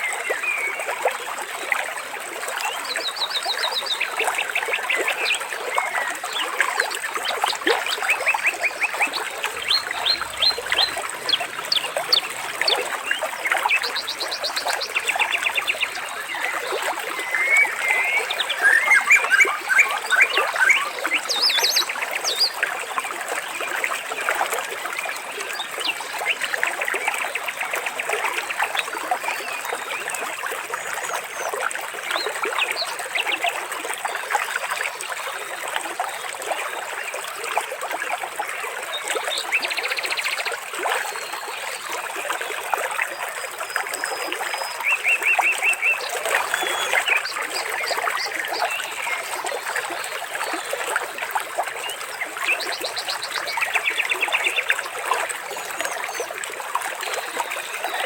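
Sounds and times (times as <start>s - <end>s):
water trickling: 0.0s - 39.6s
bird trills: 9.6s - 16.5s.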